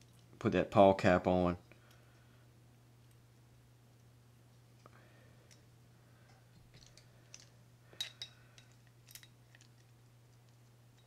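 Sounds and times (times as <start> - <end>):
small metal parts clinking: 6.6 - 10.0.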